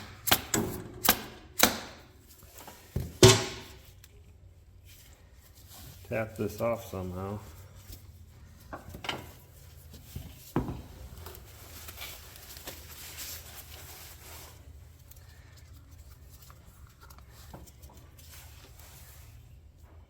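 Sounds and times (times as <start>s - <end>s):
scraping and handling of parts: 2.0s - 20.0s.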